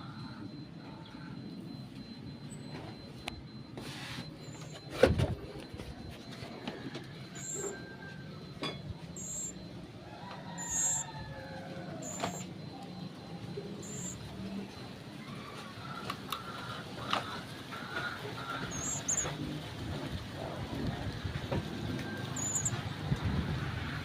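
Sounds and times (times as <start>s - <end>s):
bird chirping high-pitched: 7.4s - 7.8s, 9.2s - 9.6s, 10.6s - 11.1s, 12.0s - 12.5s, 13.1s - 14.3s, 18.5s - 19.4s, 22.2s - 22.9s.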